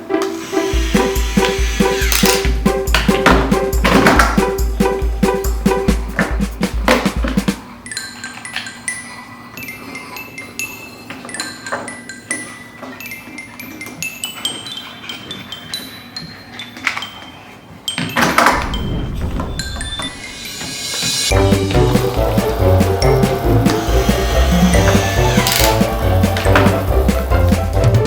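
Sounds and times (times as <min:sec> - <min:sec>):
light clinks and ringing pings: 0:07.8 - 0:18.6.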